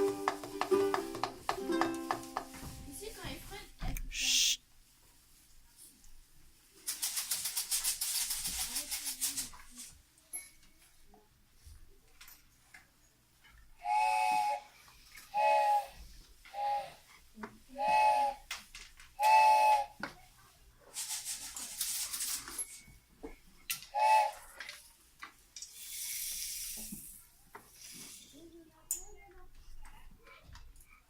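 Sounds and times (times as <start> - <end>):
whistle toots: 24.0 - 24.5.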